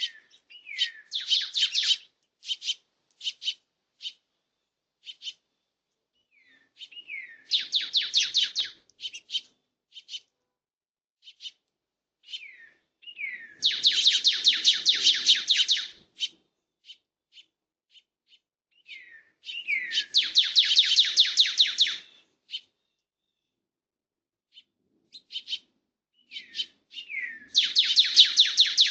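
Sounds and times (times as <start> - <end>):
songbird singing trills: 0.0 - 4.2, 5.0 - 5.4, 6.2 - 10.3, 12.2 - 23.6, 24.5 - 28.9
bird chips: 12.2 - 17.5.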